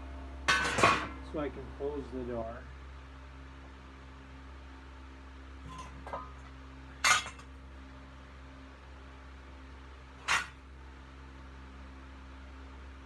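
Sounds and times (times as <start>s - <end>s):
steady low hum: 0.0s - 13.0s
metal objects clanking: 0.5s - 1.2s, 5.6s - 6.4s, 7.0s - 7.5s, 10.2s - 10.6s.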